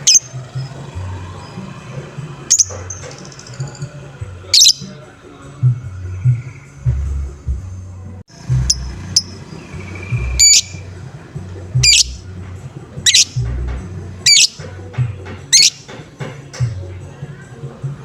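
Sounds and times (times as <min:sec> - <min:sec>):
bird harsh squawks: 0:00.0 - 0:00.3, 0:02.5 - 0:03.0, 0:04.5 - 0:05.0, 0:08.7 - 0:10.9, 0:11.8 - 0:12.2, 0:13.0 - 0:13.5, 0:14.2 - 0:14.7, 0:15.5 - 0:15.9
bird chirps: 0:00.0 - 0:01.7, 0:02.5 - 0:05.0, 0:08.3 - 0:12.4, 0:13.0 - 0:14.8, 0:15.4 - 0:16.0
background music with beat: 0:00.0 - 0:18.0.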